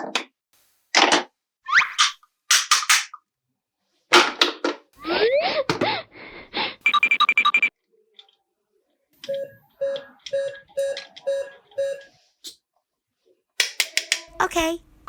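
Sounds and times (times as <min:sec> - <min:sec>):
electronic toy beeps: 0:06.9 - 0:07.7, 0:09.3 - 0:12.2.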